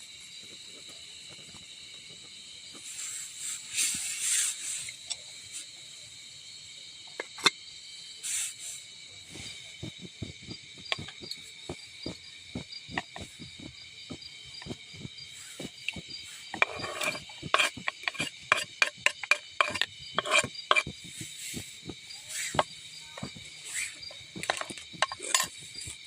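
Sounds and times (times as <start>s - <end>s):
high insect chirring: 0.1s - 26.0s
clicks and knocks of handling: 24.3s - 25.5s.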